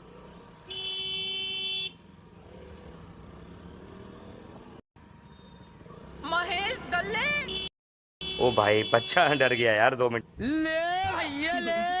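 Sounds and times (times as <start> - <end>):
vehicle horn blaring: 0.7 - 2.0, 7.4 - 9.8.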